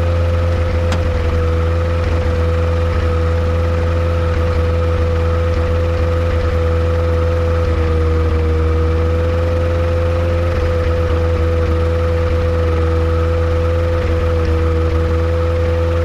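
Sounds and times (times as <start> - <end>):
constant engine whine: 0.0 - 16.0
airplane engine droning: 0.2 - 3.9.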